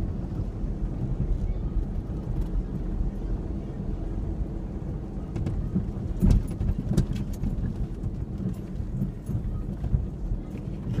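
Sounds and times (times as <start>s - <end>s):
truck engine and road rumble: 0.0s - 11.0s
truck rattling over rough ground: 4.8s - 11.0s.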